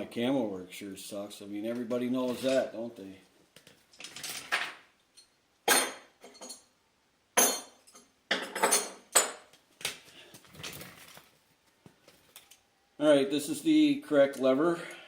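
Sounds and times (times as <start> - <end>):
metal tools clinking and clanking: 4.0 - 6.7, 7.4 - 9.5.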